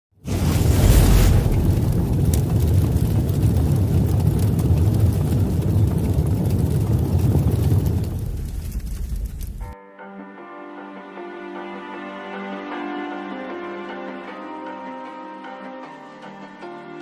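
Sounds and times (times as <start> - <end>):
loud low rumbling: 0.3 - 9.8.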